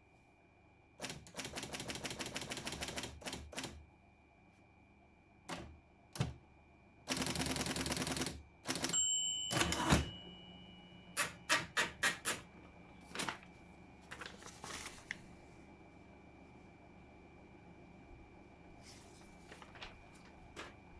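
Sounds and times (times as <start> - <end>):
sharp typewriter keystrokes: 1.0 - 3.8, 7.1 - 10.1
typewriter motor hum: 1.0 - 3.8, 7.1 - 9.0
rattling typewriter strikes: 8.7 - 10.3, 11.2 - 12.5.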